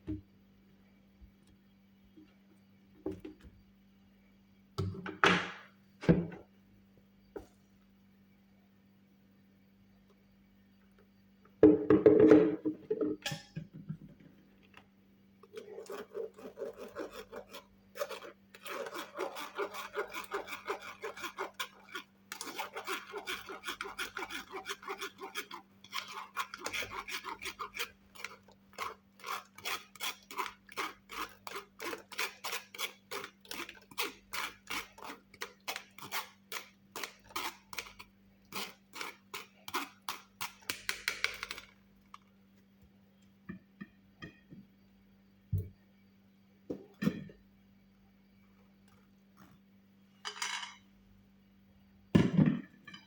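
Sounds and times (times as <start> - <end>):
kitchen utensil scraping: 15.5 - 40.6.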